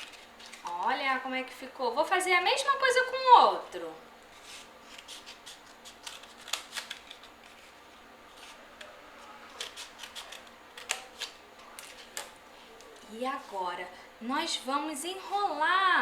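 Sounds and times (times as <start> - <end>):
scissors snipping cardboard: 9.5 - 12.2.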